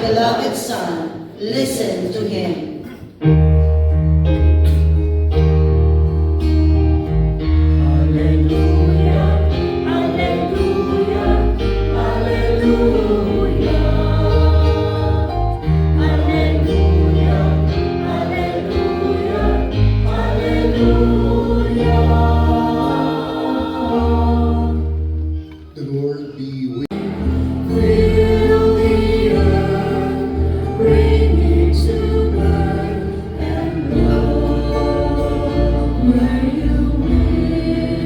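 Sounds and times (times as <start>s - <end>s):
choir singing with keyboard: 7.3s - 25.6s, 26.9s - 38.0s.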